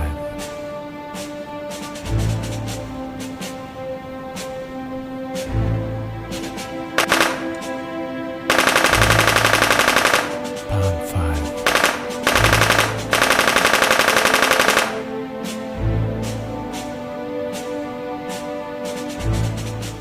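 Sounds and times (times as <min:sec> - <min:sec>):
background music: 0:00.0 - 0:20.0
automatic rifle fire: 0:07.0 - 0:07.7, 0:08.5 - 0:10.6, 0:11.7 - 0:15.1.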